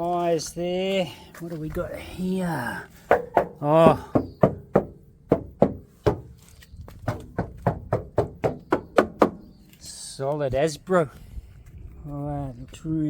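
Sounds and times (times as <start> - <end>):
knuckles rapping on steel panels: 3.1 - 9.5.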